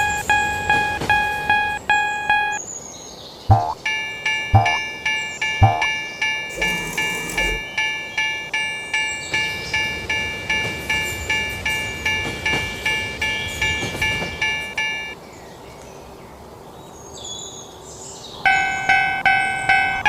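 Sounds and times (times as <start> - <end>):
level crossing bell ringing: 3.6 - 15.2, 18.5 - 20.0.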